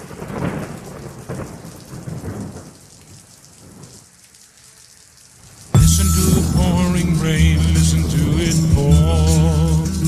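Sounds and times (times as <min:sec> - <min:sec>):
thunder rumbling: 0:00.0 - 0:02.8, 0:05.8 - 0:09.9
steady rain: 0:00.0 - 0:10.0.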